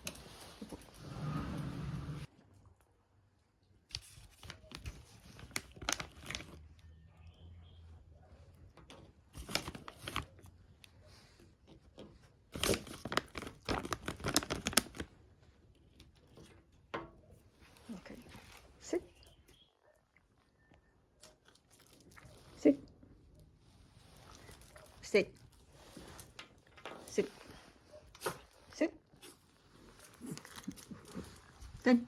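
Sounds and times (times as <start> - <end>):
packaging crinkling and tearing: 3.9 - 6.6, 9.3 - 10.5, 12.5 - 15.2, 29.9 - 31.6.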